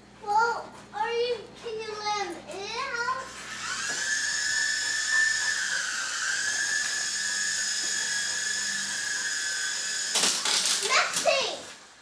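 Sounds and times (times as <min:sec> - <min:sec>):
toy helicopter motor whine: 0:02.5 - 0:12.0.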